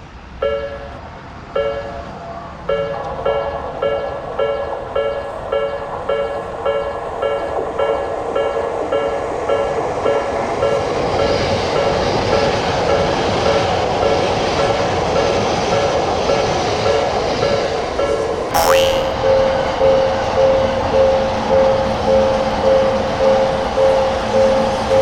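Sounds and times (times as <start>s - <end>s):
railroad crossing bell ringing: 0.4s - 14.3s.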